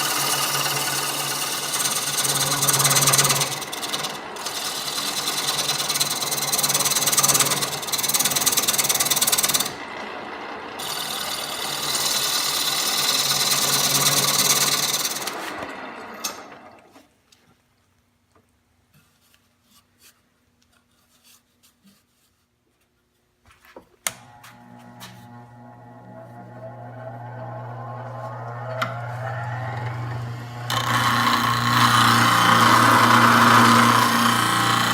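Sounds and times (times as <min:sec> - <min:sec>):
lathe tool rasping hiss: 0:00.0 - 0:09.7, 0:10.8 - 0:15.6.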